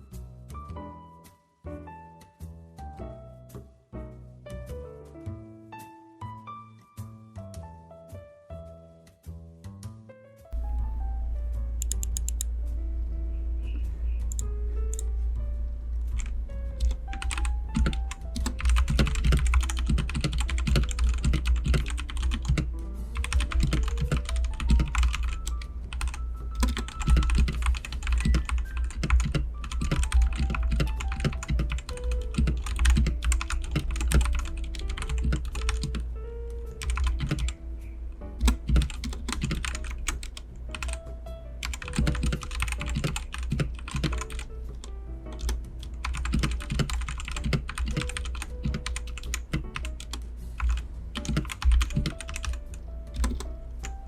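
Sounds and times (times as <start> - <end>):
background music: 0.0 - 54.0
mechanical keyboard typing: 11.8 - 12.5, 16.1 - 36.0, 36.6 - 37.6, 38.4 - 41.0, 41.6 - 54.0.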